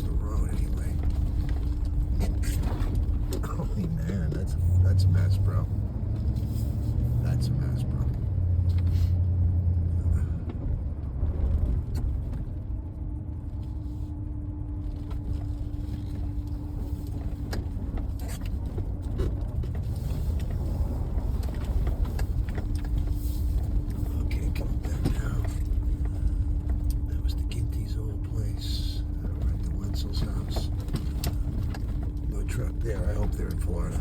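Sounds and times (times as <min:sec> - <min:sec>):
steady hum: 0:00.0 - 0:07.8, 0:09.9 - 0:34.0
truck engine and tyre rumble: 0:00.0 - 0:34.0.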